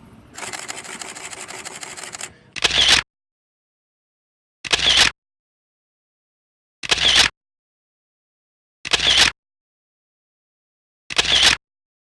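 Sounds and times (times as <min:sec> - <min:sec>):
camera shutter burst: 0:00.4 - 0:03.0
single camera shutter release: 0:00.4 - 0:03.0, 0:06.8 - 0:07.3, 0:08.9 - 0:09.3.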